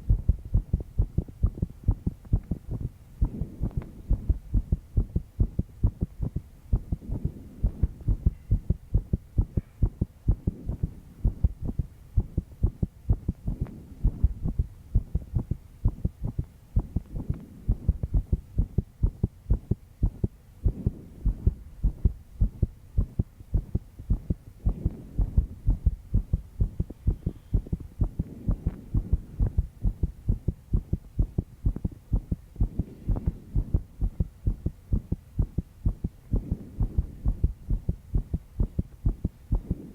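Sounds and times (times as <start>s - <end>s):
fast heartbeat thumps: 0.0s - 39.9s.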